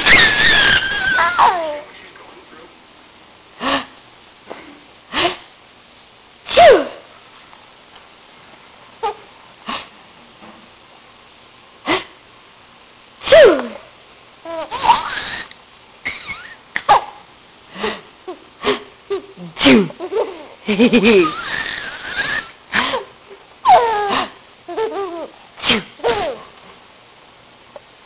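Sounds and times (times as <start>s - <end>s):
baby laughing: 0.0s - 1.9s, 14.5s - 15.5s, 19.1s - 22.6s, 23.7s - 25.4s, 26.0s - 26.5s
man fake sneezing: 6.5s - 7.0s, 13.2s - 13.8s, 18.6s - 20.0s, 25.6s - 26.4s.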